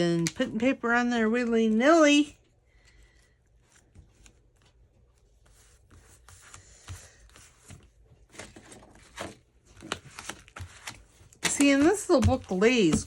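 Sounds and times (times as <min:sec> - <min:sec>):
paper rustling and tapping: 0:05.8 - 0:13.0.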